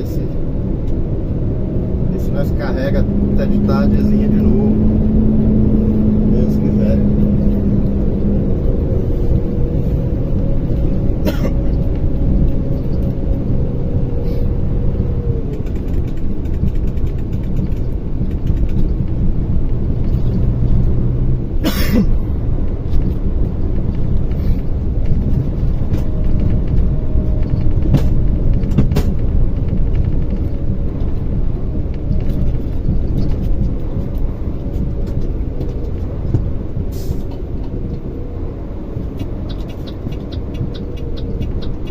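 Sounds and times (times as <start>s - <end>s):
road noise: 0.0s - 41.9s
truck diesel engine running: 0.0s - 41.9s
sharp knocks and rattles: 15.5s - 20.5s, 22.6s - 36.6s.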